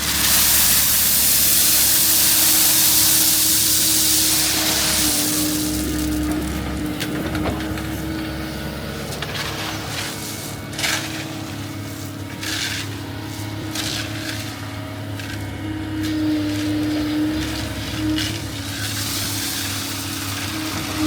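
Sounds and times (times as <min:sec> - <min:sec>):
loud hiss: 0:00.0 - 0:06.2
engine running: 0:00.0 - 0:21.0.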